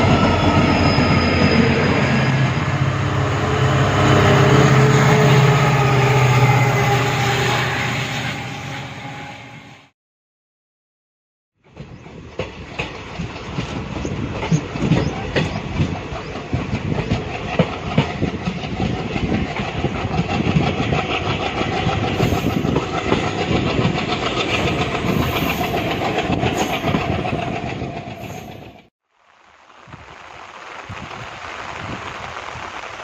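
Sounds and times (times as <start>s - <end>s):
train wheels clattering over rail joints: 11.7s - 28.8s.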